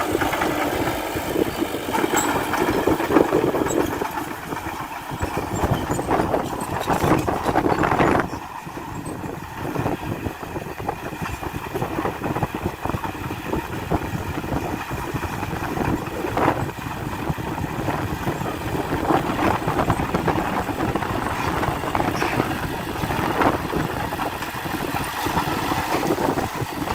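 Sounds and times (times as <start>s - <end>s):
heavy machinery diesel engine: 0.0s - 26.9s.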